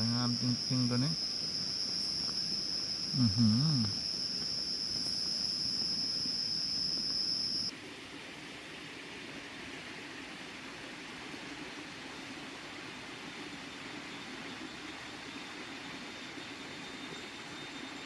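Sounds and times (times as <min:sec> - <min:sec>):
insect high-pitched call: 0:00.0 - 0:07.7
man humming: 0:03.2 - 0:04.0.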